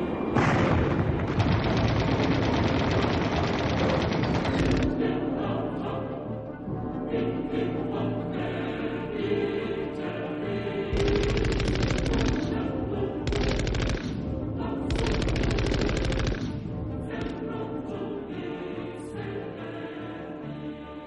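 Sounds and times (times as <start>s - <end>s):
choral music: 0.0s - 21.0s
automatic gunfire: 0.7s - 4.9s, 11.0s - 12.6s, 13.3s - 14.2s, 14.9s - 16.6s.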